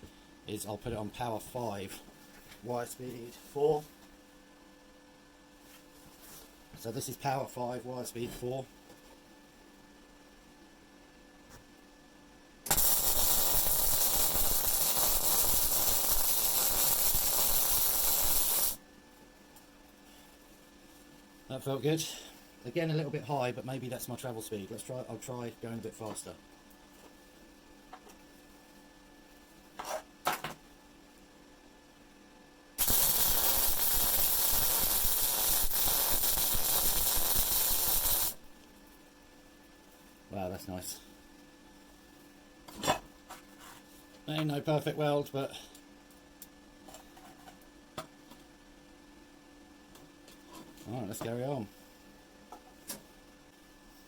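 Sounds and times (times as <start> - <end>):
welding arc hissing: 12.7 - 18.8, 32.8 - 38.5.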